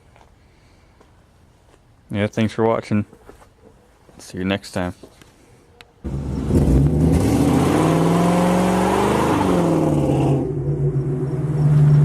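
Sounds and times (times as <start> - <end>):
car engine revving: 6.1 - 12.0.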